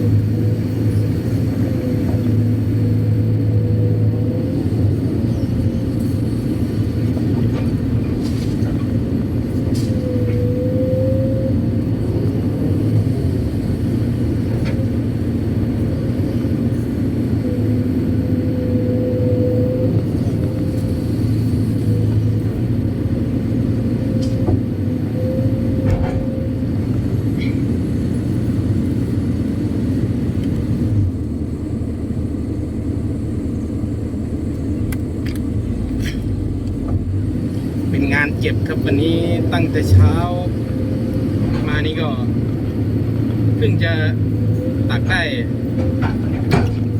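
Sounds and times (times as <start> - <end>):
excavator diesel engine running: 0.0 - 46.9
hydraulic whine: 24.0 - 46.9.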